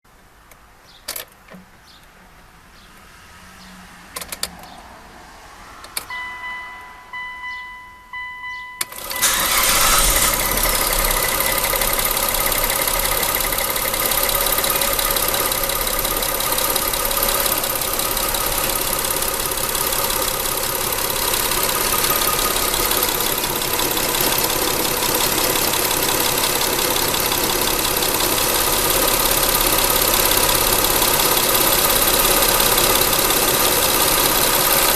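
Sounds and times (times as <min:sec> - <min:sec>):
repeating chime: 0:06.1 - 0:09.9
car engine cranking and starting: 0:08.8 - 0:34.9
loud rapid engine clacking: 0:09.0 - 0:34.9.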